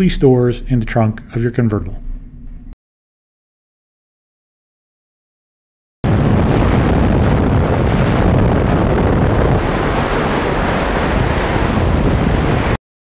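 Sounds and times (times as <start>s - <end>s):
wind buffeting microphone: 6.1s - 12.8s.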